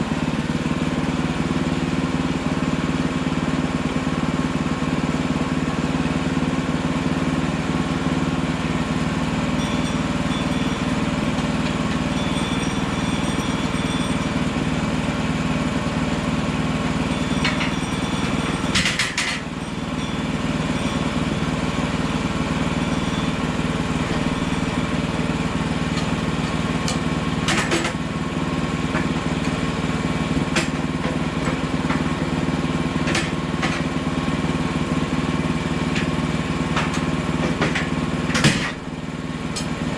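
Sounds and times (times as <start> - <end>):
small gasoline engine running: 0.0 - 39.9.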